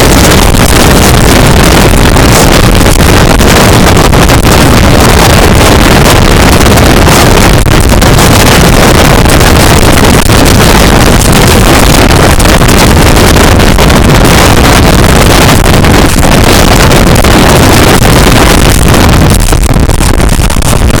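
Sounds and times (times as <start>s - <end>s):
wind battering microphone: 0.0s - 21.0s.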